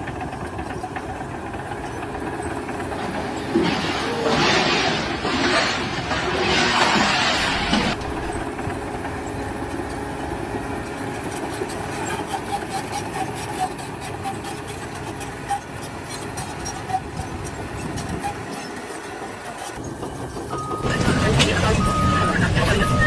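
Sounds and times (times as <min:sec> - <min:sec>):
machinery humming: 0:02.0 - 0:19.9.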